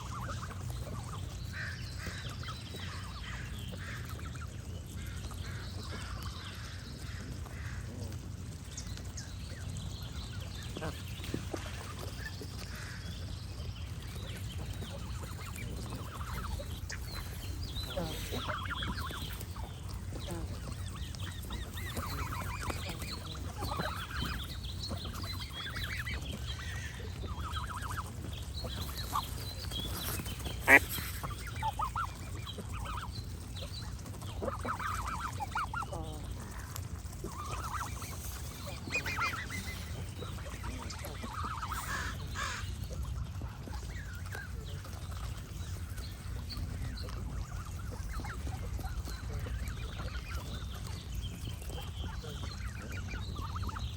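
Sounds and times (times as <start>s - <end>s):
steady low rumble: 0.0s - 53.9s
geese honking: 14.5s - 33.2s, 34.0s - 44.6s, 51.6s - 53.9s.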